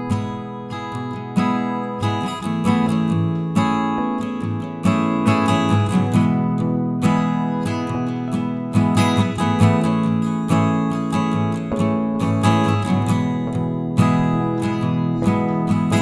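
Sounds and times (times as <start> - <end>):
acoustic guitar strumming: 0.0 - 16.0.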